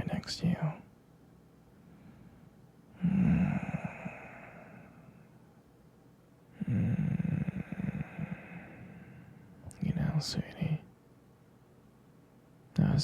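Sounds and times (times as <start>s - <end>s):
man breathing out heavily: 1.8s - 5.2s, 6.6s - 9.5s.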